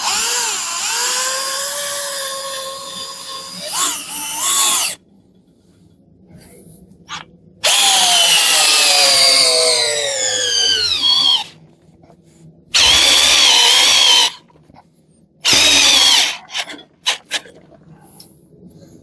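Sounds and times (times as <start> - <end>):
cordless drill driving screw: 0.0 - 5.0, 12.8 - 14.4, 15.5 - 17.3.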